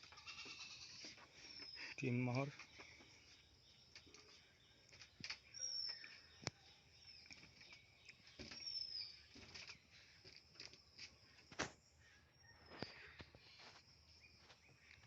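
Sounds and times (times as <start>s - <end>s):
birds whistling: 5.4s - 9.9s.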